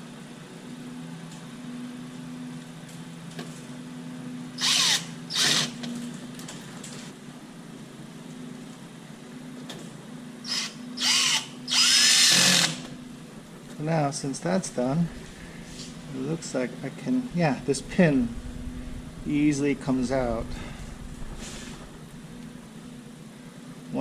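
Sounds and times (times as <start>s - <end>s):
drill-driver driving screws: 4.6s - 5.9s, 10.5s - 13.0s.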